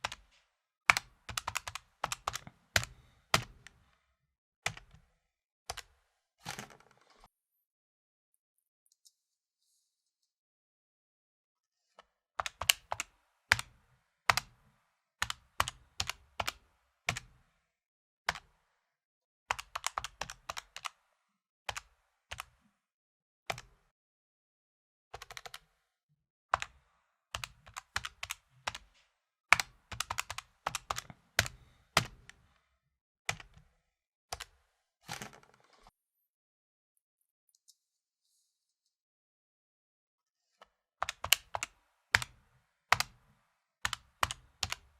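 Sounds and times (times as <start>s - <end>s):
calculator keys tapped: 0.9s - 3.6s, 29.6s - 32.4s, 41.0s - 42.3s, 43.9s - 44.9s.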